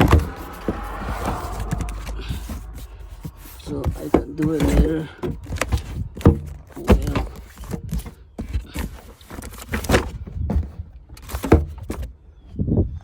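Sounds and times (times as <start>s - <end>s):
sudden thuds and knocks: 0.0s - 8.7s.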